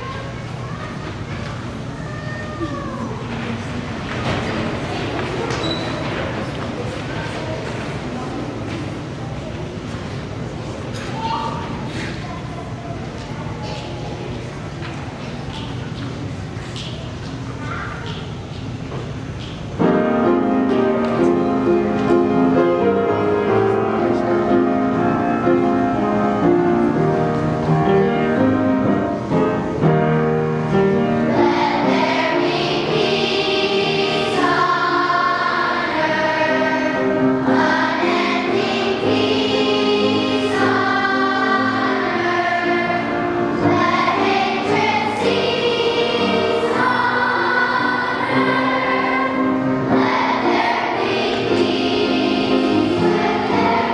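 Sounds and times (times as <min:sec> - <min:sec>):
children's choir singing: 0:19.7 - 0:53.9.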